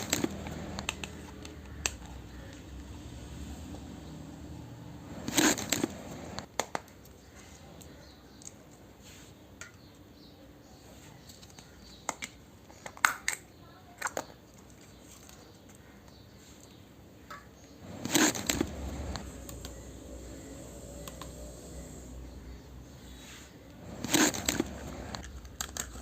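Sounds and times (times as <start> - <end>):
plastic toy pieces rustling: 23.8 - 26.0
plastic toy pieces clicking: 24.1 - 26.0.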